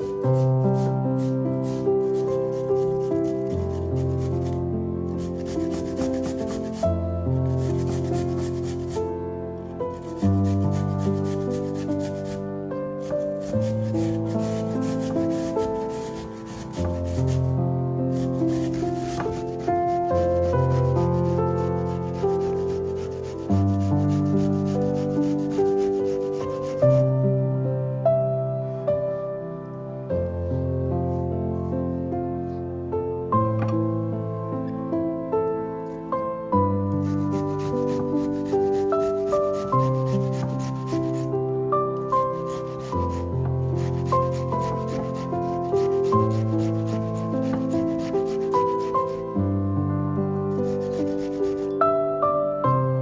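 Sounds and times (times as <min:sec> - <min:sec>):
soft piano music: 0:00.0 - 0:53.0
food grated on metal grater: 0:13.1 - 0:17.5, 0:18.1 - 0:26.8, 0:37.0 - 0:41.3, 0:42.0 - 0:49.4.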